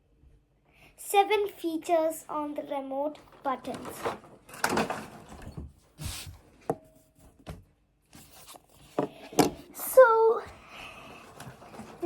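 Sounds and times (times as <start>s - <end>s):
plastic packaging rustling: 3.2s - 5.5s, 11.1s - 12.0s.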